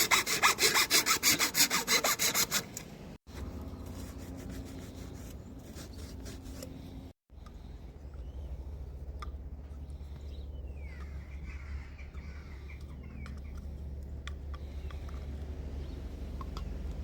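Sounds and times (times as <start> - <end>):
bird calling: 10.1 - 13.6.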